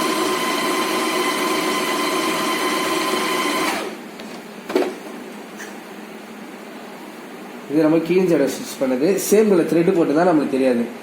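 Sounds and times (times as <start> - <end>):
sewing machine whining: 0.0 - 4.0.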